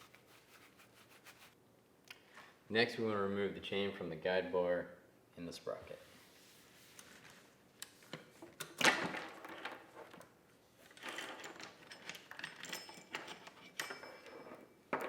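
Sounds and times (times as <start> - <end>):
saw chain links clicking and rattling: 10.9 - 14.8.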